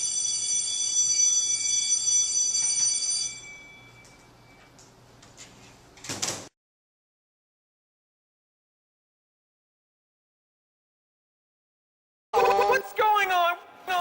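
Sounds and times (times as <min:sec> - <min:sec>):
bell ringing: 0:00.0 - 0:04.8.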